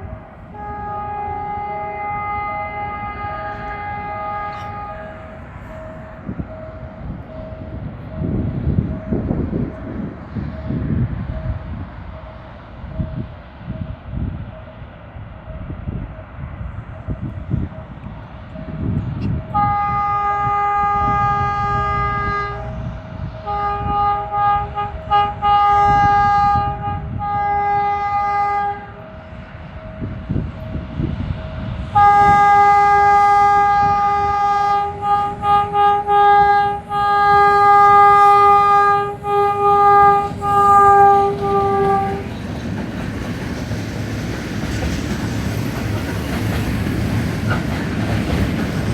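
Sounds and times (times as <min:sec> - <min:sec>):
locomotive air horn blasts: 0:00.0 - 0:05.8, 0:19.5 - 0:22.8, 0:23.4 - 0:29.2, 0:31.9 - 0:42.3
moving train rumble: 0:00.0 - 0:48.9.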